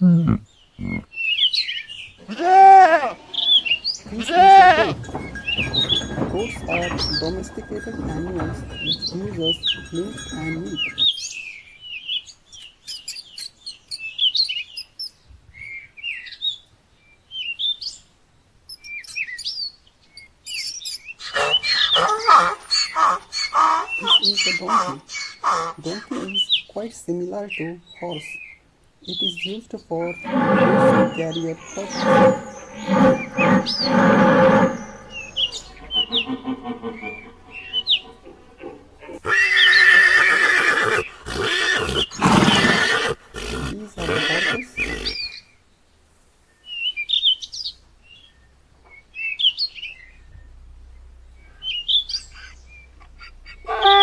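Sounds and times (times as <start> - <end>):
small birds chirping and twittering: 0.0 - 50.6
loud sustained animal call: 2.2 - 10.8, 30.2 - 45.2, 50.5 - 54.0.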